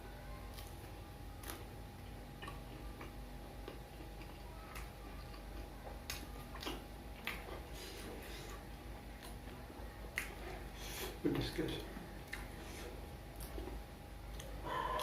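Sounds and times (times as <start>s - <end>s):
faint steady hum: 0.0s - 15.0s
chewing crisp fried snacks: 0.3s - 15.0s.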